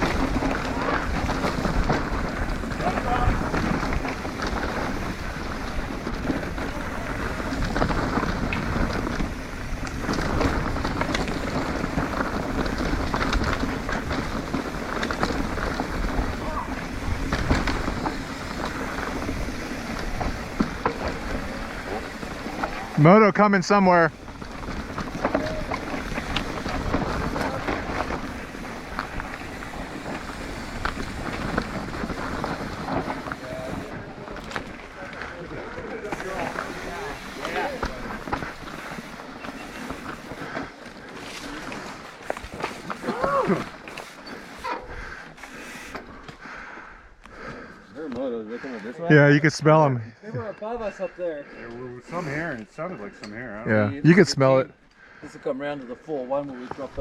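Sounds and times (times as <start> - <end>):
tyres crunching over gravel: 0.0 - 48.6
bike clicks and rattles: 0.0 - 49.0
wind rumbling on microphone: 24.1 - 35.8.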